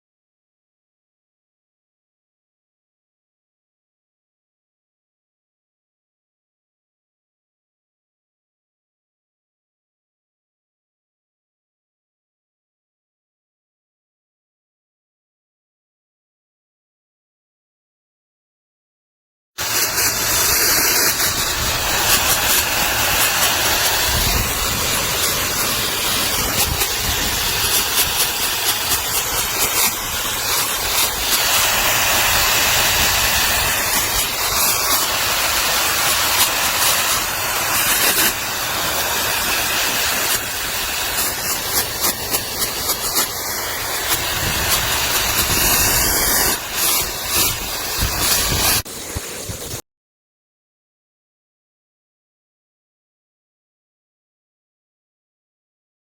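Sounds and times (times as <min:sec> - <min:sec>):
pet dryer blowing air: 0:19.6 - 0:49.8.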